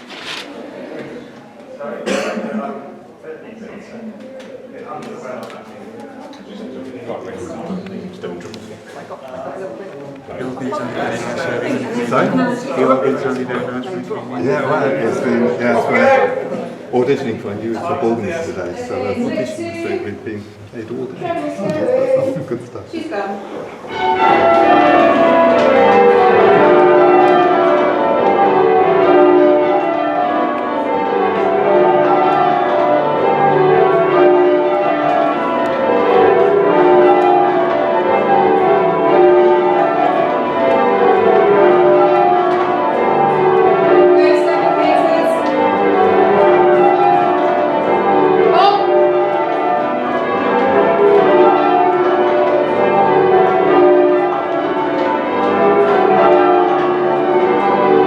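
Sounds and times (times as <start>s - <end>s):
church bells ringing in changes: 23.8s - 58.0s.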